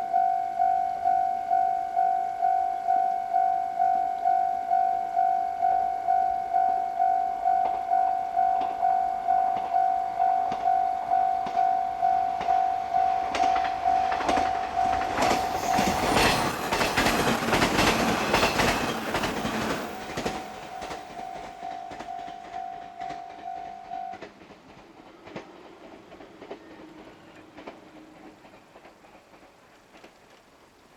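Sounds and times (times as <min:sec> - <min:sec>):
level crossing alarm bell: 0:00.0 - 0:24.2
train wheels clacking over rail joints: 0:07.6 - 0:30.9.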